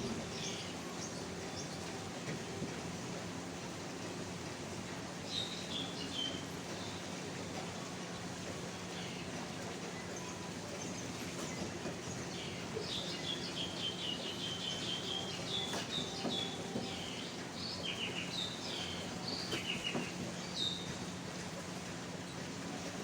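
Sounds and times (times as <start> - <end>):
birds chirping: 10.0 - 21.2.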